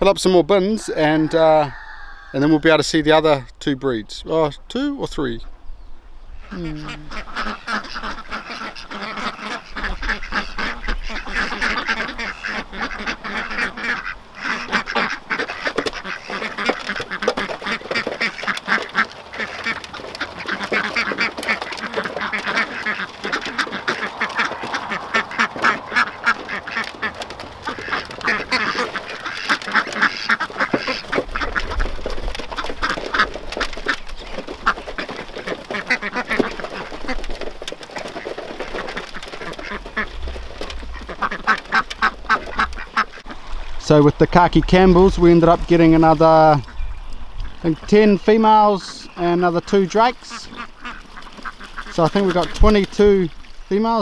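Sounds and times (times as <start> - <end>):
ducks quacking: 0.0 - 54.0.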